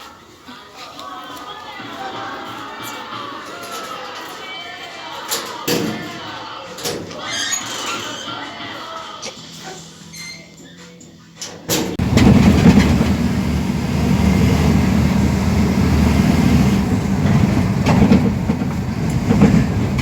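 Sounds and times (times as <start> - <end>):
low hum: 12.0 - 20.0
vehicle rumble: 12.0 - 20.0.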